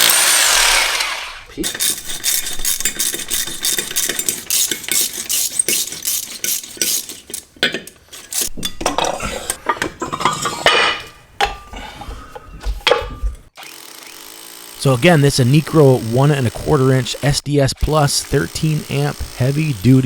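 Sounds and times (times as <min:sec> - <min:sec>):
metal parts clinking and clattering: 0:01.6 - 0:13.4.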